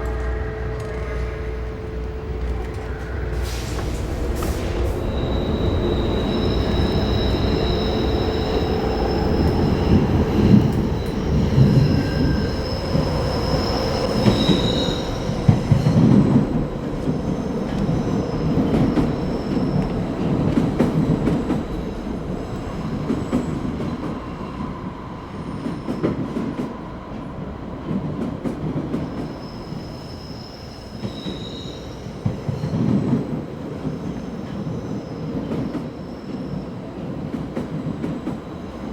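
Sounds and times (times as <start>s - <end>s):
high steady squeals: 0.0s - 16.0s.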